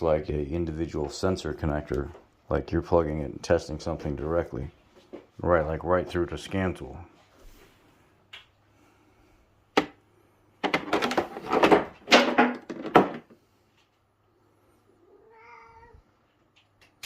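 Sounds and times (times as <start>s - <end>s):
cat meowing: 15.0s - 16.2s.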